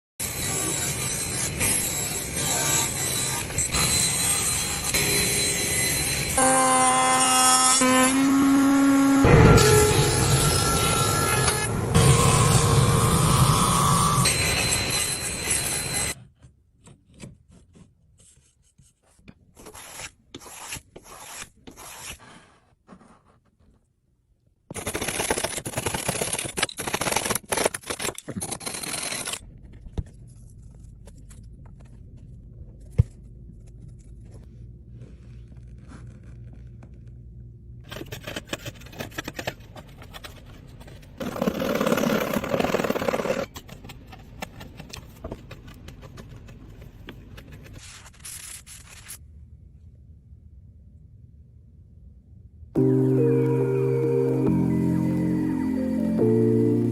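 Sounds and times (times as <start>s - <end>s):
wood being scraped by hand: 19.6s - 23.4s.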